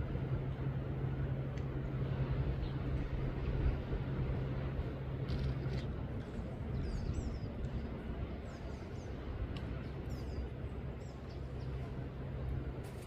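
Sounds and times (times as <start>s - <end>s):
low hum: 0.0s - 13.0s
steady rushing noise: 0.0s - 13.0s
small birds chirping: 5.6s - 12.0s.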